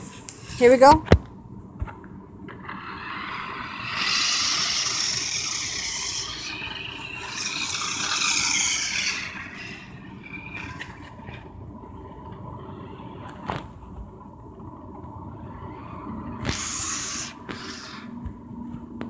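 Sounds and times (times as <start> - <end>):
toy car electric motor whirring: 2.6 - 11.5, 15.8 - 18.1.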